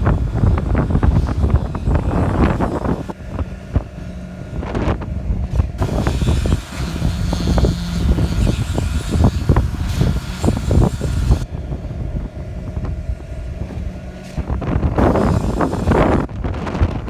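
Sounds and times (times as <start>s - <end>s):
concrete pump humming: 0.0s - 16.3s
wind buffeting microphone: 0.0s - 17.0s.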